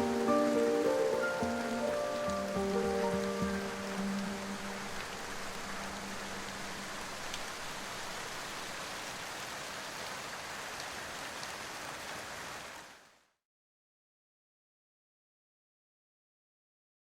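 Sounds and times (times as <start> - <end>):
rain hiss: 0.0 - 13.3.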